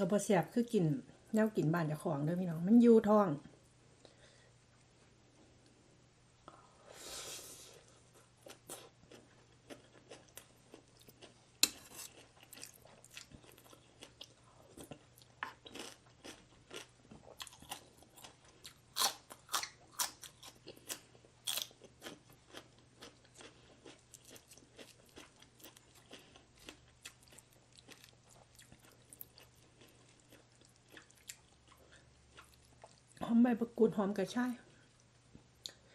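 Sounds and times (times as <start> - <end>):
faint steady hum: 0.0 - 35.9
person chewing crisp food: 7.6 - 33.2.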